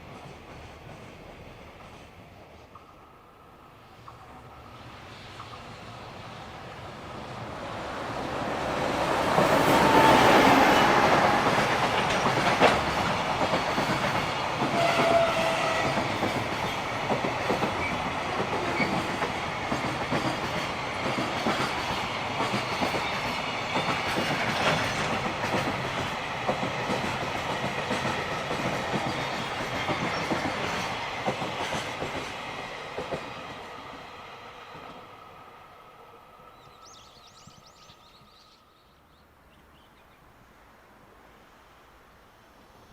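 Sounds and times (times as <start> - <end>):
freight train wheels clattering: 8.4 - 34.0.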